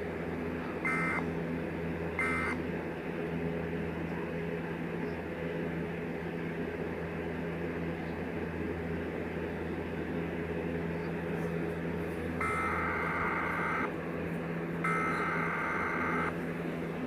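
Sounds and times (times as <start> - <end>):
low electrical hum: 7.9 - 17.0.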